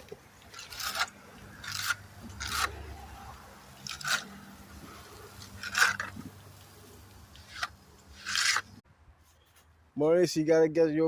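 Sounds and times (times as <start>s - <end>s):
trowel scraping wet mortar: 0.4s - 8.8s.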